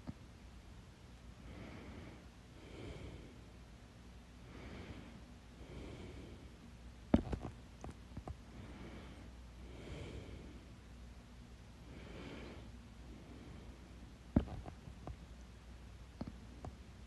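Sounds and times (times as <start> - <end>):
person breathing: 1.4 - 3.6, 4.4 - 7.4, 8.4 - 10.8, 11.8 - 14.7.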